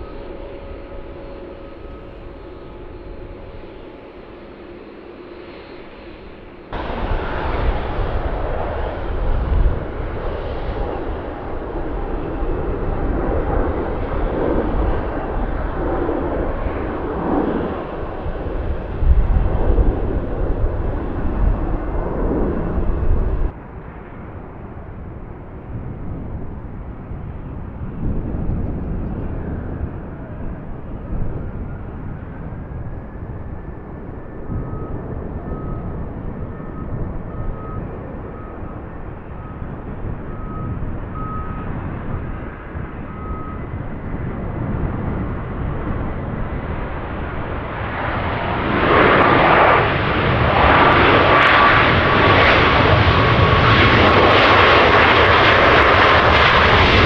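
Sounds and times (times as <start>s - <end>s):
steady jet noise: 0.0s - 23.8s
faint jet whine: 0.0s - 57.0s
jet engines deep rumble: 0.0s - 57.0s.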